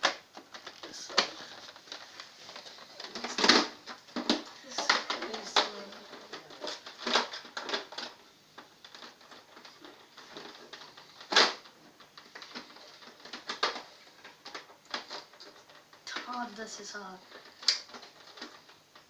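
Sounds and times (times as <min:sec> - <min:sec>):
plastic parts clicking and knocking: 0:00.0 - 0:19.0.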